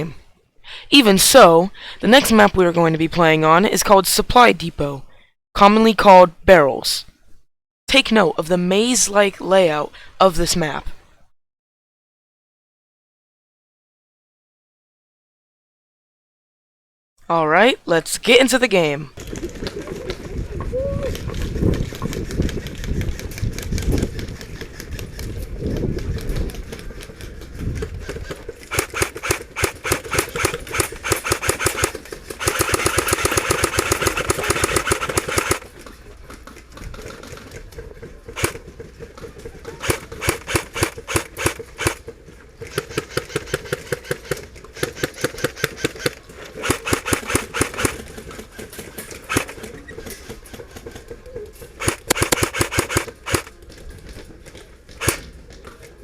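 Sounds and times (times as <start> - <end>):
airsoft rifles firing bursts: 28.6 - 35.7, 38.4 - 38.8, 39.7 - 49.7, 51.8 - 53.5, 55.0 - 55.3.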